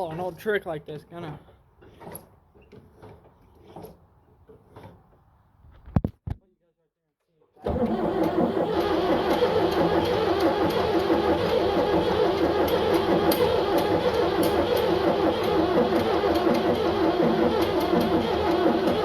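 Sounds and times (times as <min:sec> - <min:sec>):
diesel engine cranking without firing: 0:07.6 - 0:19.0.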